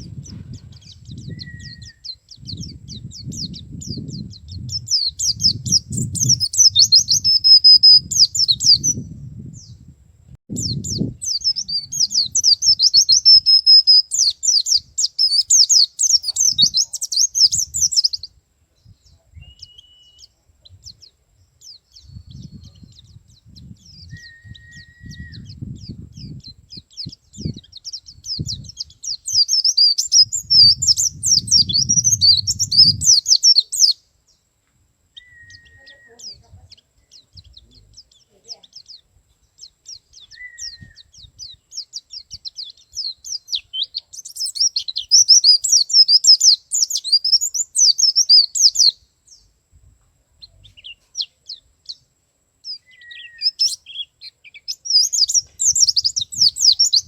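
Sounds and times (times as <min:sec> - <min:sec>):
bird chirps: 0:00.0 - 0:09.9, 0:10.5 - 0:34.4, 0:35.1 - 0:49.6, 0:50.4 - 0:57.0
bird twittering song: 0:00.0 - 0:09.9, 0:10.5 - 0:34.5, 0:35.1 - 0:49.6, 0:50.4 - 0:57.0
bird whistles: 0:00.8 - 0:02.7, 0:19.4 - 0:20.4, 0:23.9 - 0:25.6, 0:27.4 - 0:34.0, 0:35.2 - 0:36.4, 0:39.9 - 0:41.6, 0:42.4 - 0:49.0, 0:52.7 - 0:57.0.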